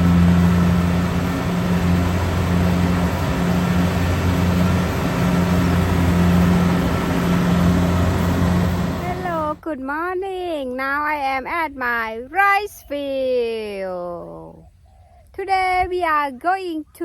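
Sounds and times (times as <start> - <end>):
engine running steadily: 0.0 - 9.7.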